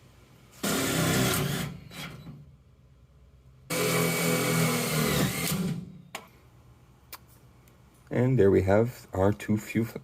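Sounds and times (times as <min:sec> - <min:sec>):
power drill running: 0:00.6 - 0:02.3, 0:03.7 - 0:05.9.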